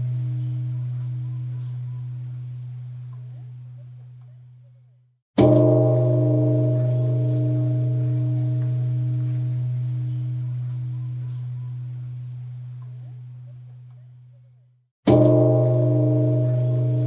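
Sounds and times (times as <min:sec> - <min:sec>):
temple bell ringing: 0:00.0 - 0:03.3, 0:05.4 - 0:13.0, 0:15.1 - 0:17.0.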